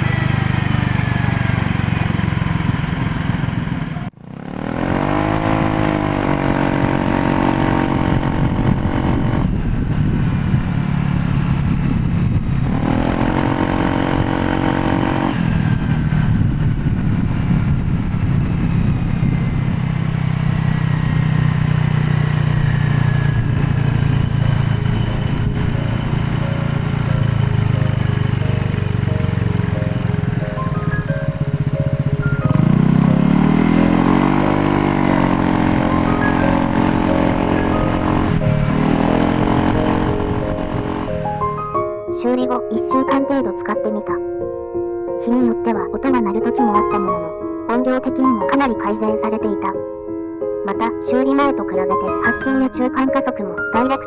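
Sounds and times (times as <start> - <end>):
low rumble of wind: 0.0 - 41.9
scooter engine accelerating: 0.0 - 42.1.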